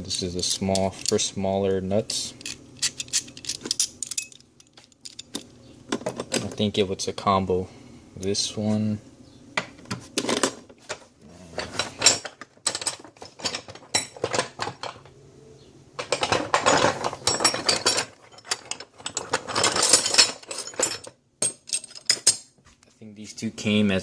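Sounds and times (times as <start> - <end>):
metal clinks: 2.4 - 5.4.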